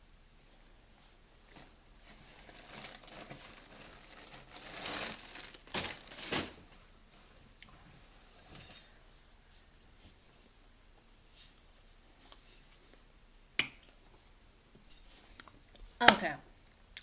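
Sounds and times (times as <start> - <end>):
plastic packaging crinkling: 1.5 - 6.8.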